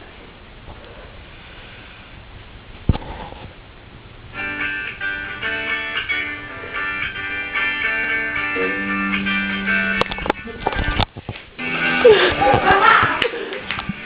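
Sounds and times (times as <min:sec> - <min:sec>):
plucked guitar music: 0:04.3 - 0:14.0.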